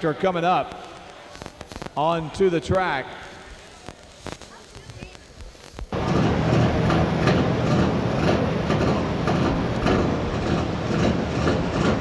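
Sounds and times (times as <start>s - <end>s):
tractor diesel engine running: 6.0s - 12.0s.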